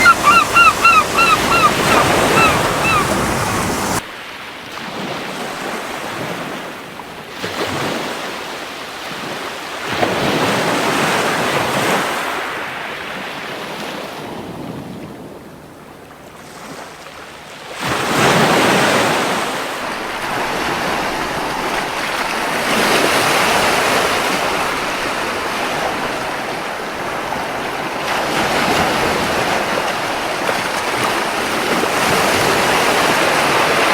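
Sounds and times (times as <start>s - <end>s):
gull calling short cries: 0.0s - 3.6s
ocean surf washing on beach: 0.0s - 4.0s.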